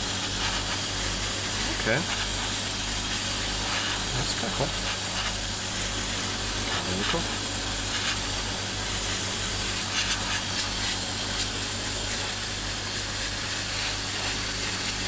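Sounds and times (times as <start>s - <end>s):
airbrush spraying hiss: 0.0s - 15.0s
steady low hum: 0.0s - 15.0s.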